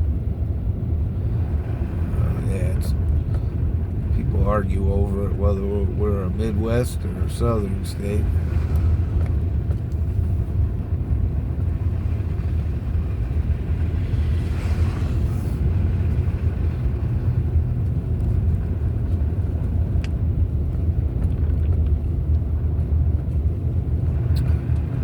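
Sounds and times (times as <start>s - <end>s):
car driving rumble inside cabin: 0.0s - 25.0s.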